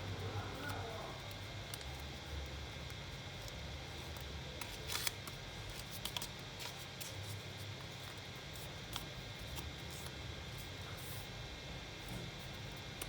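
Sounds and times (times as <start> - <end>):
steady low hum: 0.0 - 13.0
paper folding and creasing: 4.1 - 7.4.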